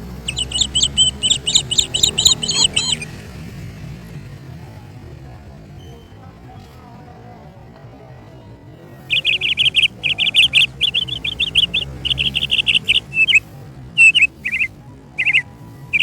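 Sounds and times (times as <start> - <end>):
bird chirping: 0.0 - 3.2, 9.1 - 13.4, 14.0 - 16.0.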